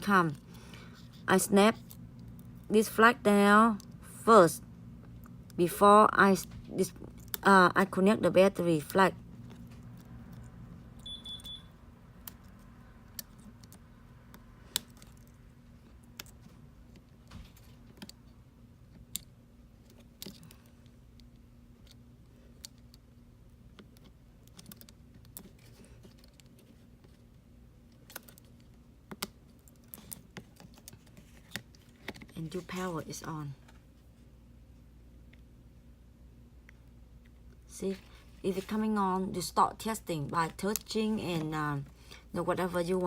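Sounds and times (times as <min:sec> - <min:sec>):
faint low hum: 0:00.0 - 0:43.0
high beep: 0:11.0 - 0:11.7.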